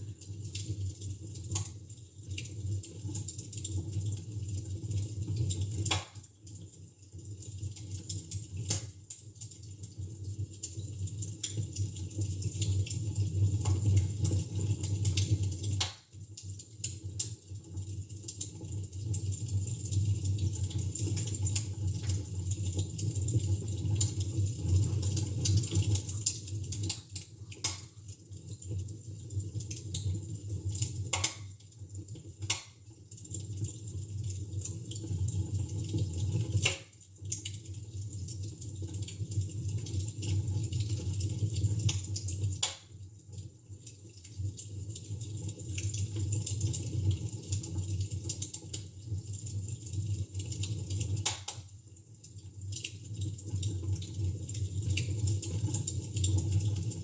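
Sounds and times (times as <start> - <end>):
fire popping and snapping: 5.4 - 6.7, 15.1 - 17.4, 25.4 - 30.1, 30.7 - 33.8, 36.6 - 37.6, 41.8 - 43.0, 51.0 - 51.7.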